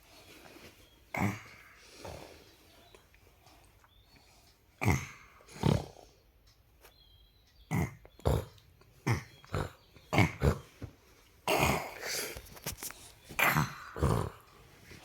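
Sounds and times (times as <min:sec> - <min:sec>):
baby grunting: 0:01.1 - 0:02.2, 0:04.8 - 0:06.0, 0:07.7 - 0:10.8, 0:11.4 - 0:12.4, 0:13.4 - 0:14.6.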